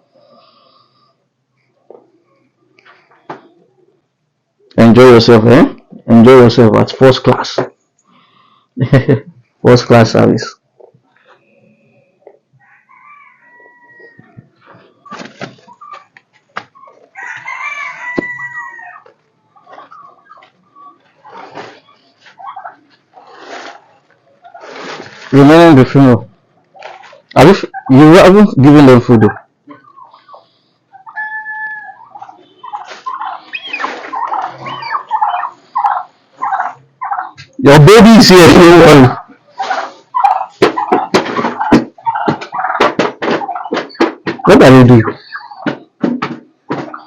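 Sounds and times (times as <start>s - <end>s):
farm animals crying: 11.0s - 25.0s, 29.2s - 37.6s, 38.4s - 46.0s
rooster crowing: 12.6s - 14.4s, 17.1s - 19.1s
rustling: 14.4s - 25.6s, 32.2s - 37.2s
sharp knocks: 45.6s - 47.0s.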